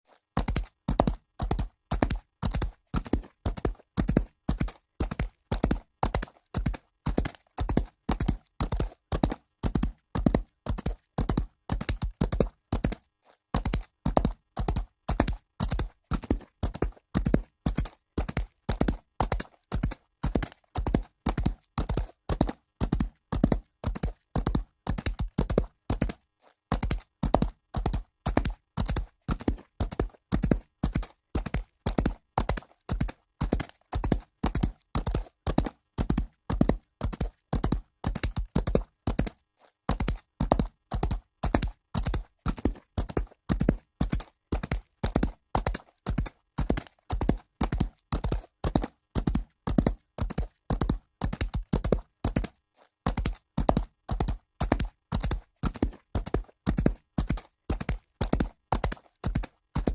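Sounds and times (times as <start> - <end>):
horse hooves galloping on dirt: 0.1 - 59.9.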